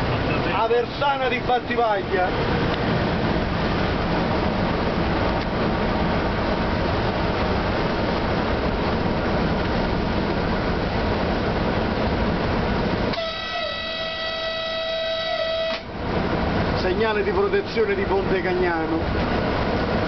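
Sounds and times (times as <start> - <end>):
horn-like tone: 13.1 - 15.9.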